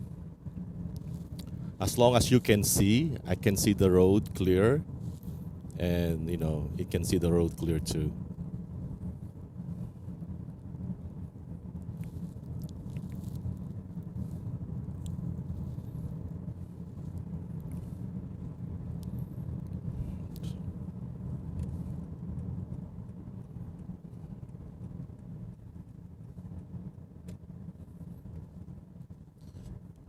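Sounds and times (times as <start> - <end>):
low road rumble inside car: 0.0 - 30.0.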